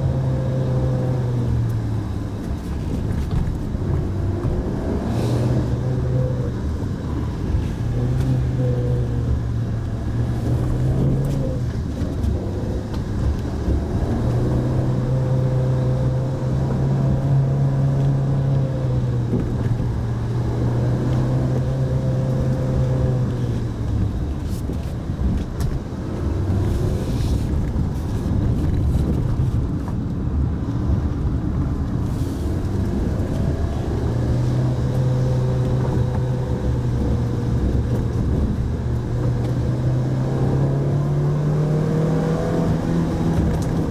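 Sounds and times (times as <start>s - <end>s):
car engine running: 0.0s - 43.9s
road noise: 0.0s - 43.9s.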